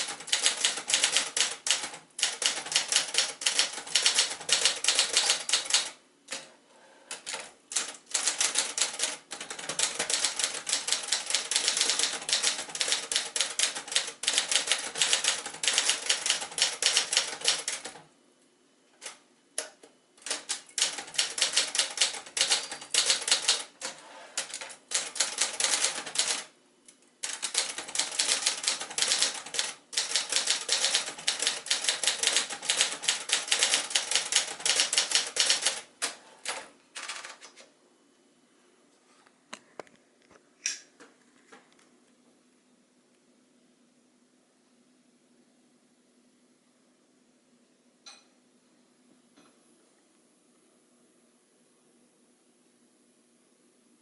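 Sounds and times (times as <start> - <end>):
typewriter keystrokes: 0.0 - 6.5, 7.1 - 18.0, 19.0 - 26.5, 27.2 - 37.7.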